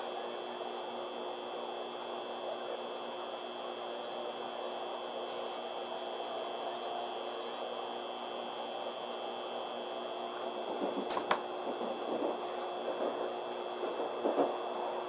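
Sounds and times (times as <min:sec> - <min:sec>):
train interior hum and whine: 0:00.0 - 0:15.0
sharp clicks: 0:11.0 - 0:11.5.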